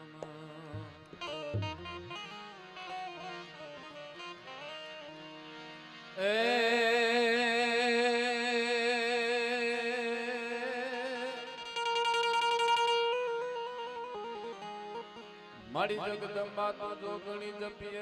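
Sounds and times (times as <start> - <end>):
soft instrumental phrase: 0.8 - 2.6.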